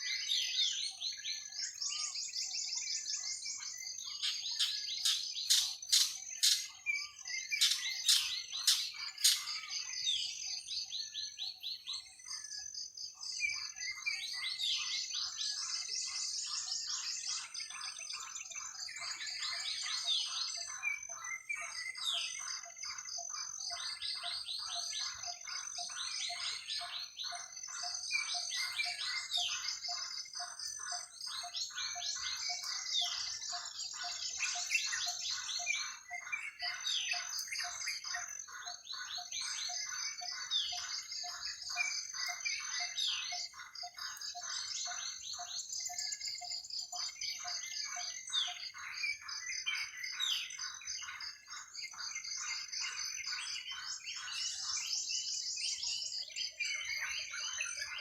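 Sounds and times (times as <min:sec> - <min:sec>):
high chirping trills: 0:04.1 - 0:09.6.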